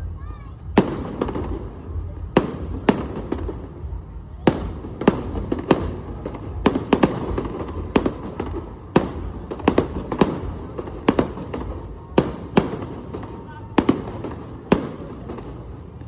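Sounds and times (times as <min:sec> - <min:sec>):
fireworks bangs: 0:00.0 - 0:16.0
low background noise: 0:00.0 - 0:16.0.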